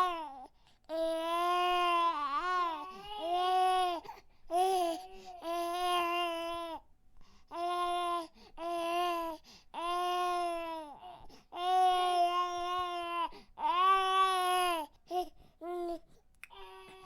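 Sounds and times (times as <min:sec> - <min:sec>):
baby crying: 0:00.0 - 0:06.8, 0:16.5 - 0:17.0.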